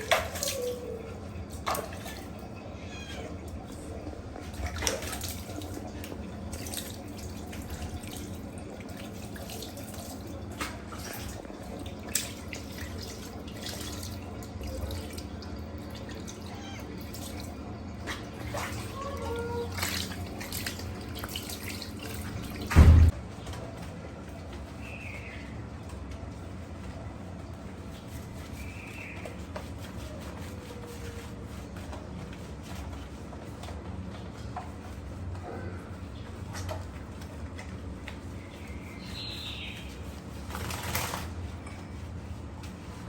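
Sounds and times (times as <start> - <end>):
tap water running: 0.0 - 23.2.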